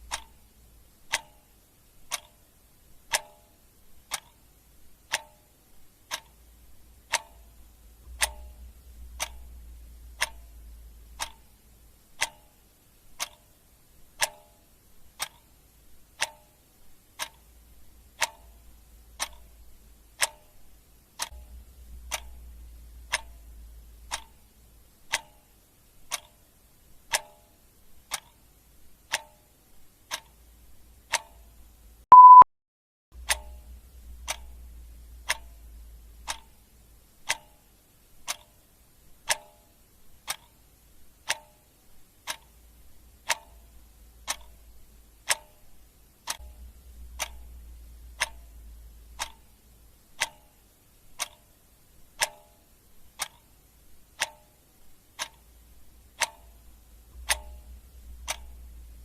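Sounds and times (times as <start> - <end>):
clock ticking: 0.0 - 32.4, 33.2 - 59.0.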